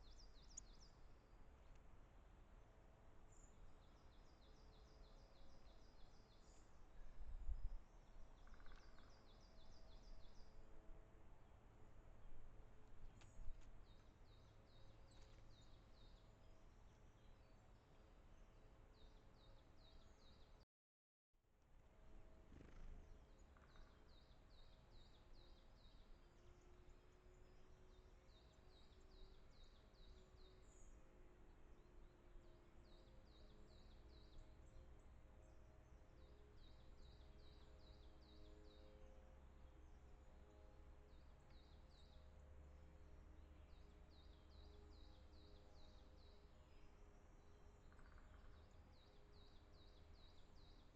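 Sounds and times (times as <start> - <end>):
low steady hiss: 0.0 - 20.6.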